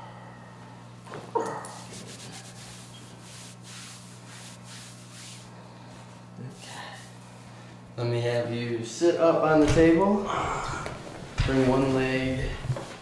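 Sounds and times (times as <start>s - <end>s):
hands rubbing and rustling: 1.8s - 5.5s.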